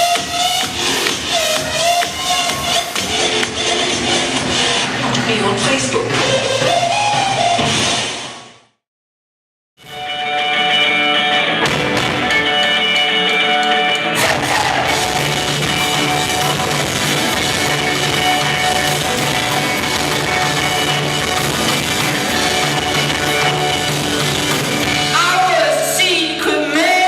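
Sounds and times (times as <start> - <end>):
ringing guitar chords: 9.8 - 25.6
rock band with drums and bass: 9.8 - 26.0.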